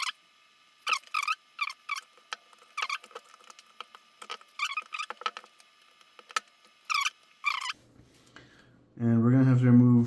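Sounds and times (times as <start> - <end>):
rubber squeaking on glass: 0.8 - 5.6, 6.3 - 7.8.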